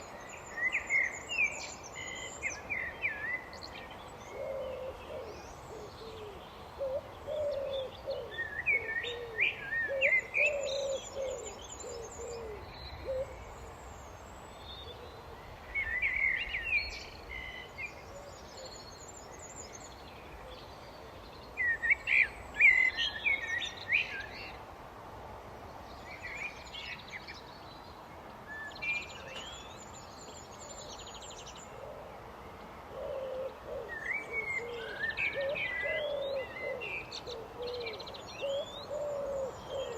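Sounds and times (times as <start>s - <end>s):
blackbird singing: 0.0s - 24.6s, 28.5s - 31.8s, 33.0s - 39.9s.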